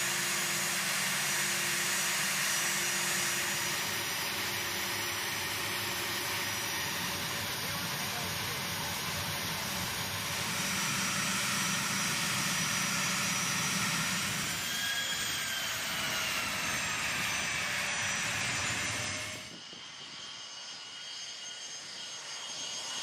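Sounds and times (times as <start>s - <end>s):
high engine whine: 0.0s - 23.0s
jet engines running: 0.0s - 23.0s.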